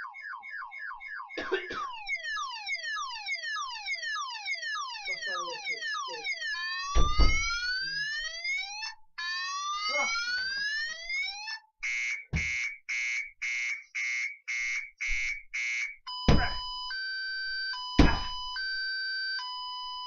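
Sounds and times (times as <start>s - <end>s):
fire alarm whooping and beeping: 0.0s - 20.0s
loud thumps: 6.9s - 7.6s, 12.2s - 12.8s, 16.3s - 16.8s, 18.0s - 18.6s.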